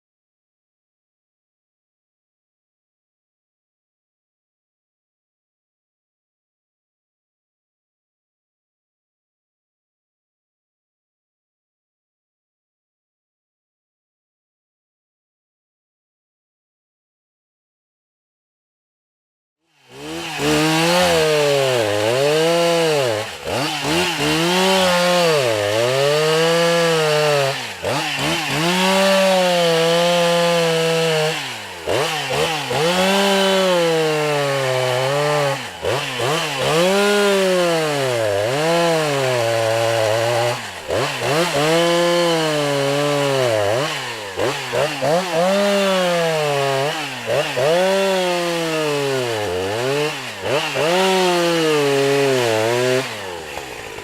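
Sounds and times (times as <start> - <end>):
chainsaw cutting wood: 19.6 - 54.0.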